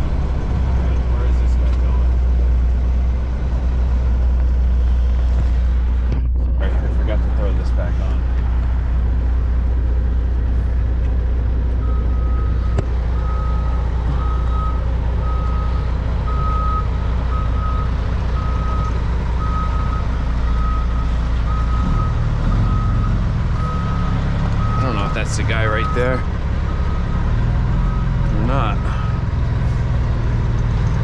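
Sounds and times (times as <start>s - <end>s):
diesel truck engine rumbling: 0.0s - 31.0s
reversing alarm beeping: 11.8s - 29.0s.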